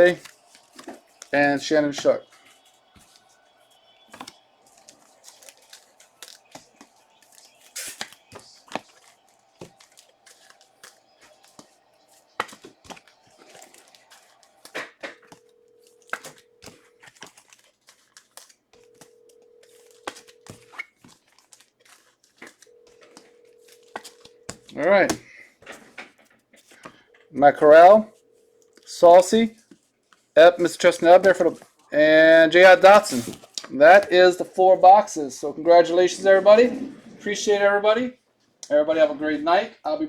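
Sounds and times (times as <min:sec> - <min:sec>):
cards and sleeves being handled: 0:00.0 - 0:37.7
faint steady tone: 0:18.4 - 0:20.9.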